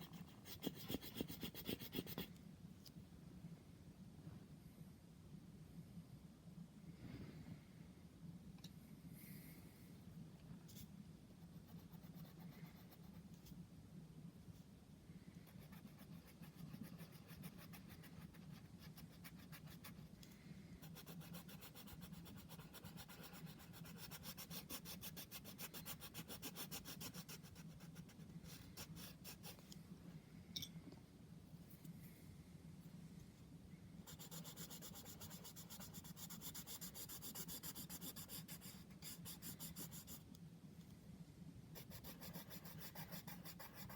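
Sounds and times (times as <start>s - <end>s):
drawing tool scratching paper: 0.0s - 2.3s, 34.1s - 40.2s, 41.8s - 43.9s
steady low hum: 0.0s - 43.9s.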